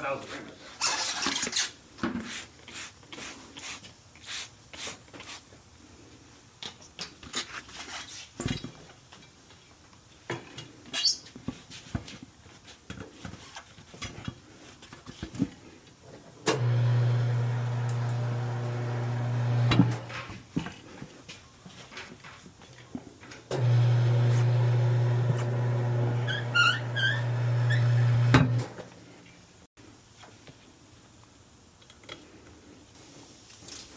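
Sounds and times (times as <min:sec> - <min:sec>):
low motor hum: 0:23.6 - 0:28.8.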